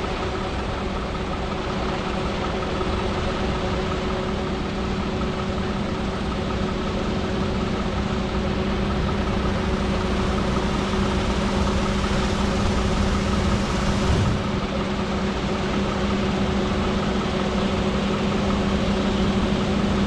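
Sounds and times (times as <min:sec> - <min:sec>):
heavy diesel machinery running: 0:00.0 - 0:20.0.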